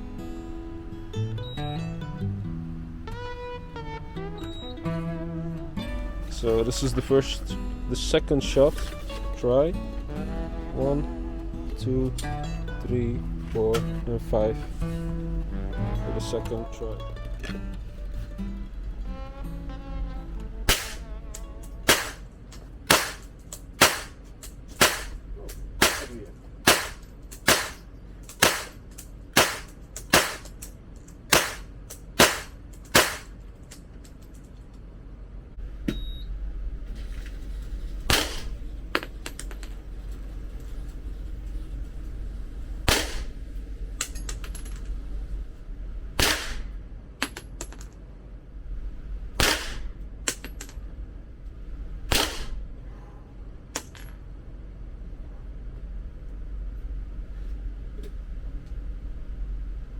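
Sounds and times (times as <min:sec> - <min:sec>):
gunshots: 0:20.7 - 0:21.1, 0:21.8 - 0:22.2, 0:22.9 - 0:24.2, 0:24.8 - 0:25.2, 0:25.8 - 0:27.8, 0:28.4 - 0:28.8, 0:29.4 - 0:30.5, 0:31.3 - 0:33.3, 0:38.1 - 0:38.6, 0:42.9 - 0:43.4, 0:46.2 - 0:46.8, 0:49.4 - 0:49.9, 0:52.1 - 0:52.6.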